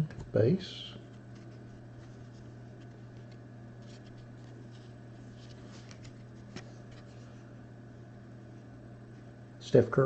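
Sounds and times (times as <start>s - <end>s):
steady low hum: 0.0s - 10.0s
trading cards rustling and clicking: 1.1s - 7.3s.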